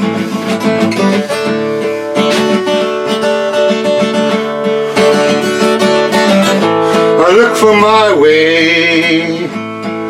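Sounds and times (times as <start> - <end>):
acoustic guitar strumming: 0.0 - 10.0
person singing: 5.1 - 9.7.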